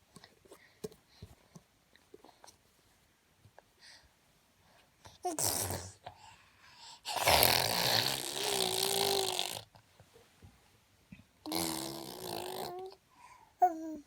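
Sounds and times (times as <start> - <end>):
baby making raspy vocal sounds: 5.2 - 6.1, 7.0 - 9.6, 11.5 - 13.0, 13.6 - 14.0.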